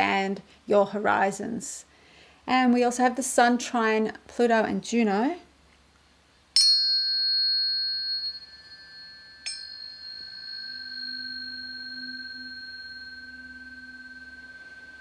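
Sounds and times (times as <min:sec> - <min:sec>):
tuning forks ringing: 0:06.6 - 0:15.0
low hum: 0:07.0 - 0:15.0.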